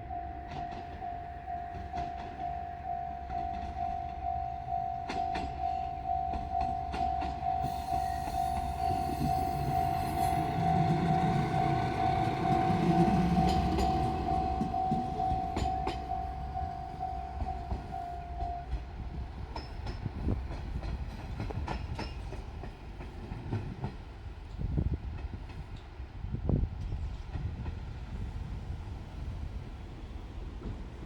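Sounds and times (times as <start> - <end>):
level crossing warning bell: 0.0 - 18.9
diesel railcar engine rumble: 0.0 - 31.0
train wheels clattering over rail joints: 6.3 - 25.9.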